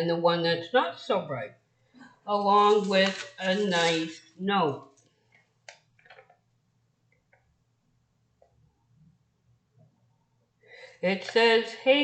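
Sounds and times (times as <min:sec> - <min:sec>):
paper rustling and clicks: 0:02.4 - 0:04.1.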